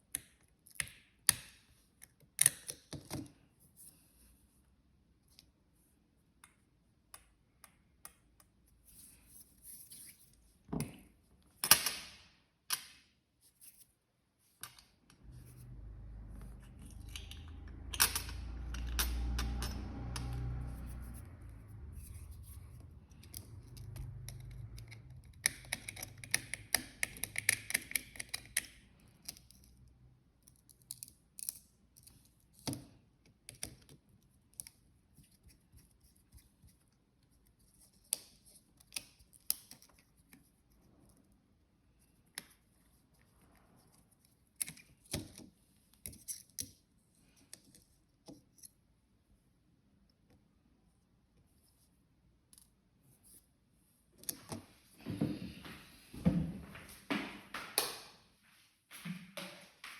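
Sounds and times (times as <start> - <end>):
low rumble: 15.3 - 25.3.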